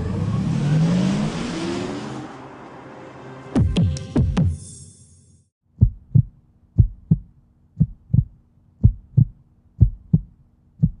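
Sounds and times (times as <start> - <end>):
electronic pulse low thumps: 5.8 - 11.0.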